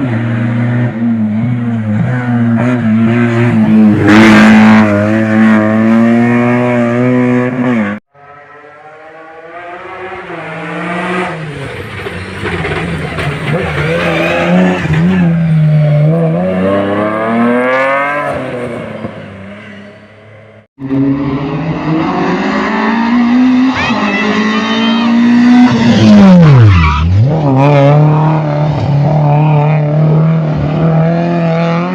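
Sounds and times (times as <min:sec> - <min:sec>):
tire squeal: 0:11.5 - 0:15.4, 0:23.7 - 0:27.3.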